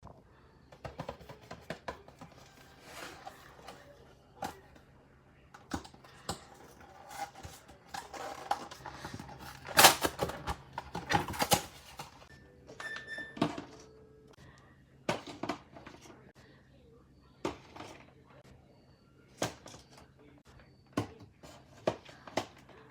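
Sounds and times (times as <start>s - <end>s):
plastic containers clicking and tapping: 0.6s - 2.6s.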